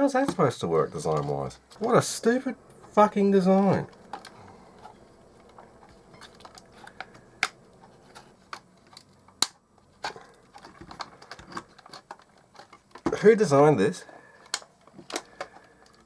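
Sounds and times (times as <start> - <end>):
sharp plastic snaps: 8.5 - 13.2, 14.4 - 16.0.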